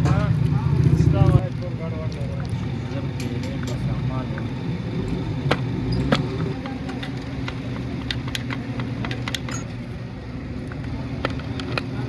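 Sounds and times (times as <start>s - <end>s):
metal tools clinking: 5.8s - 9.9s.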